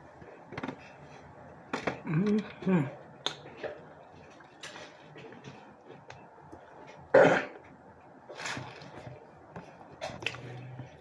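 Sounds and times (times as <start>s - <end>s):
woman coughing: 7.1s - 7.6s.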